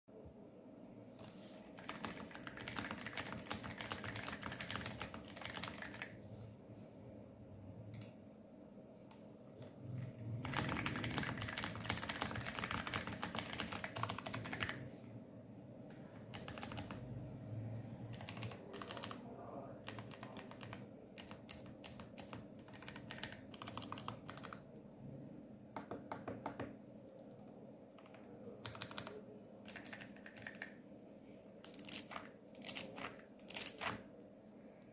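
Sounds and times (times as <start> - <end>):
mechanical keyboard typing: 1.8 - 6.2, 10.3 - 14.8, 16.0 - 17.2, 18.1 - 24.7, 25.8 - 30.8, 31.6 - 34.0.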